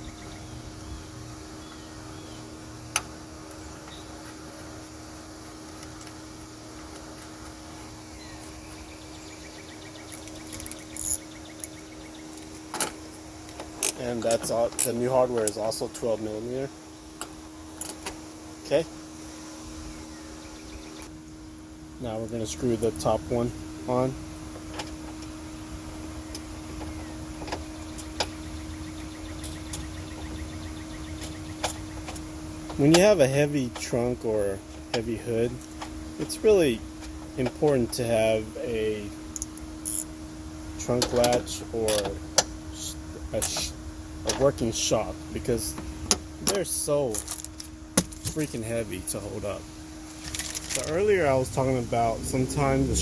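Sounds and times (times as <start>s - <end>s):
steady low hum: 0.0s - 53.0s
ratchet wrench clicking: 10.1s - 11.7s, 39.4s - 40.1s.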